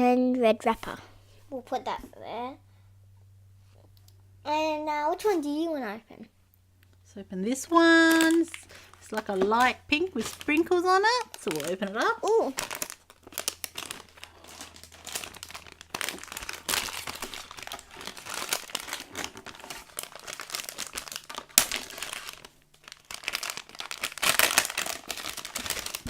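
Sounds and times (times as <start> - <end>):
packaging crinkling: 7.8 - 26.0.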